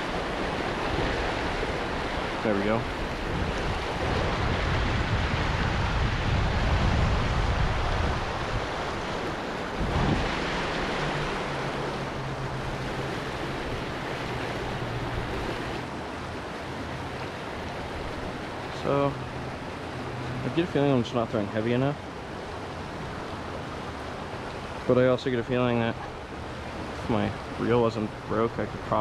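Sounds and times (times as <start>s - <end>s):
wind buffeting microphone: 0.0s - 20.7s
river rushing: 0.0s - 29.0s.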